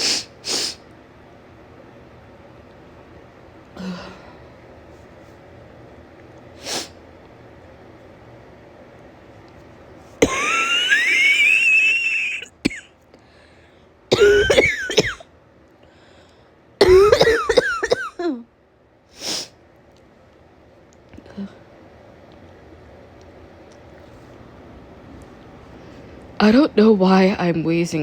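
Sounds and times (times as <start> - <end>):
woman sniffling: 0.0 - 0.8, 19.2 - 19.6
woman coughing: 10.2 - 12.9, 14.1 - 15.2, 16.8 - 18.4.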